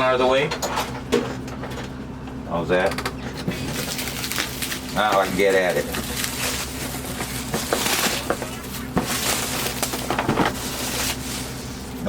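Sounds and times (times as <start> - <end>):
cardboard box flaps rustling: 5.9 - 11.9.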